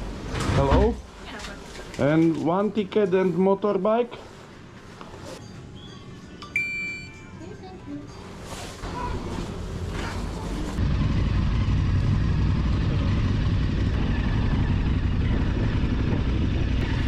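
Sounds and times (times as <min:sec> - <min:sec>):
motorcycle engine rumbling: 0:08.9 - 0:17.0.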